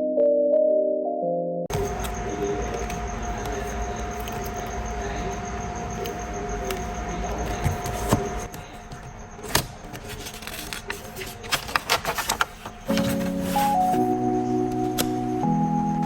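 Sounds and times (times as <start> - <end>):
background music with chords: 13.0 - 16.0.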